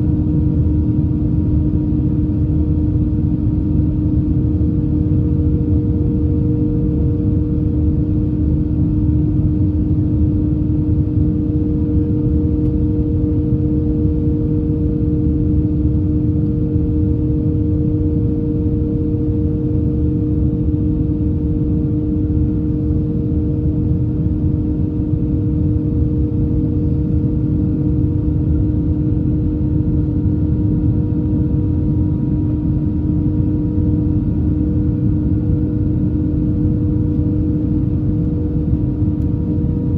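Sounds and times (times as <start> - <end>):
airplane cabin engine rumble: 0.0 - 39.9.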